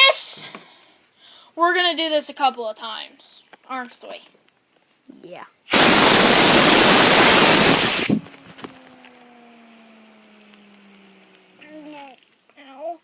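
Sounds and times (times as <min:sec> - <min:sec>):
compressed air blast hissing: 0:05.7 - 0:12.3
fidget spinner whirring: 0:05.7 - 0:13.0.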